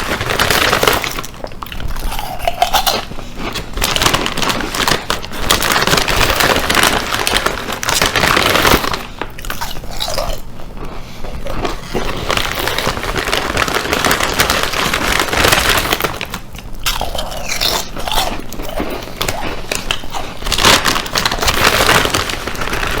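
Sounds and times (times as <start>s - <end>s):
chips being crunched: 11.5s - 23.0s.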